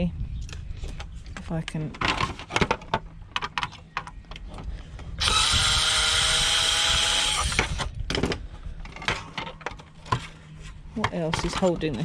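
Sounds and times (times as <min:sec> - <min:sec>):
power drill whine: 0:05.2 - 0:07.9.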